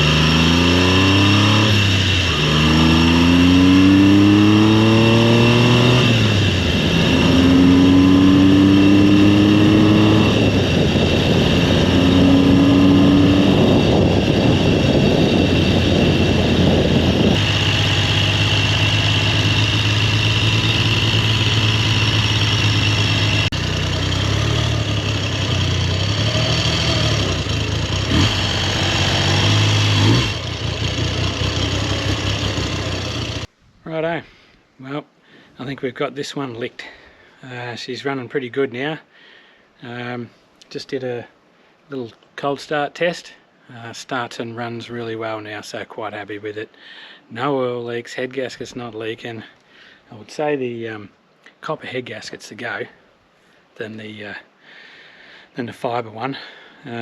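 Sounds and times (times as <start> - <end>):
motorcycle engine revving and idling: 0.0 - 33.5.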